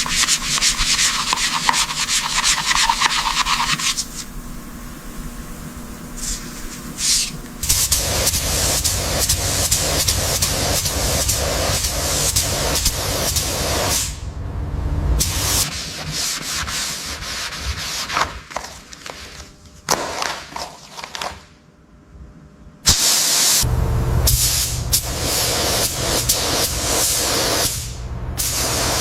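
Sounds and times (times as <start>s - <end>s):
sanding a surface: 0.0s - 14.0s, 15.2s - 18.3s.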